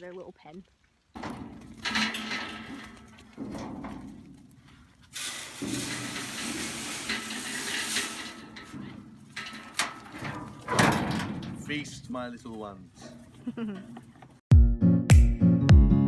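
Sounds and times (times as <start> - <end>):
rustling and handling noises: 1.2 - 14.4
grain pouring hissing rattle: 5.1 - 9.4.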